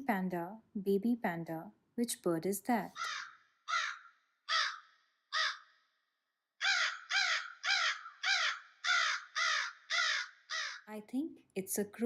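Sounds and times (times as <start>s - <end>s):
crow cawing: 3.0s - 6.0s, 6.6s - 10.9s.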